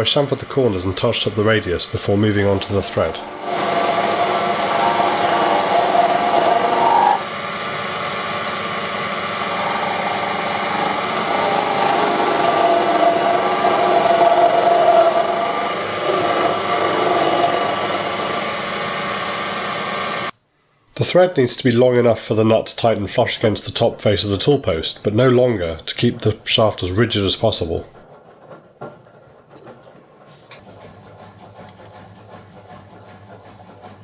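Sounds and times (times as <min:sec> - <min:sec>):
mini lathe motor whine: 0:01.2 - 0:20.3.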